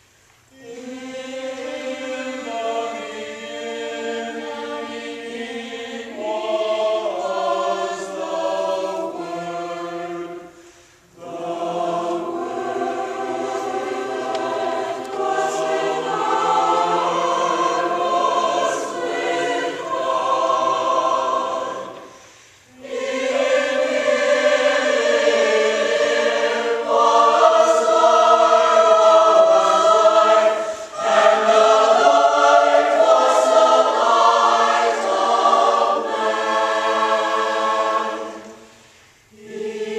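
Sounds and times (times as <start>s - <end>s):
choir singing in harmony: 0.0s - 39.9s.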